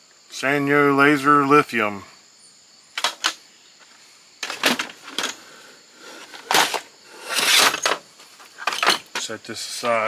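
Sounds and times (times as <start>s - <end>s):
small hard parts clicking: 3.0s - 3.4s, 4.4s - 5.4s, 6.1s - 9.3s.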